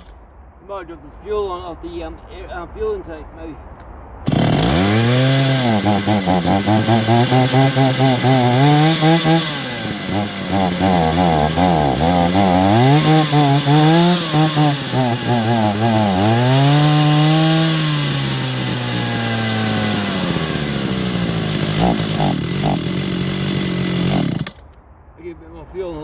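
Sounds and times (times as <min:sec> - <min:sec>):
chainsaw engine revving and idling: 0:04.2 - 0:24.7.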